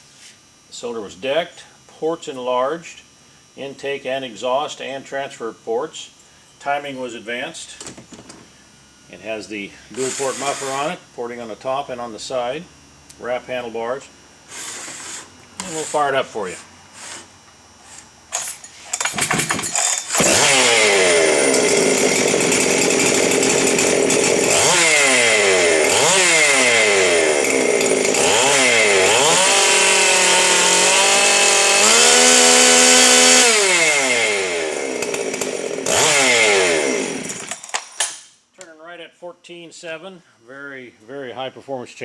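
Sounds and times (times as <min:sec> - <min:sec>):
chainsaw revving: 0:09.9 - 0:11.0, 0:14.6 - 0:17.2, 0:18.4 - 0:38.2.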